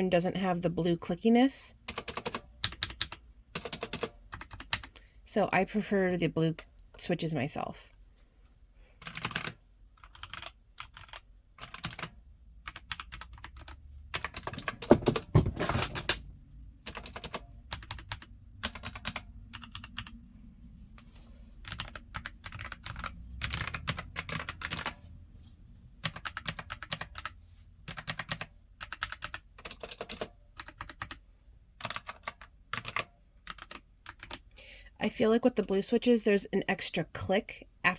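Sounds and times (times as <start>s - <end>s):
mechanical keyboard typing: 1.8s - 5.0s, 9.0s - 15.3s, 16.8s - 20.1s, 21.6s - 25.0s, 26.0s - 31.2s, 31.8s - 34.4s.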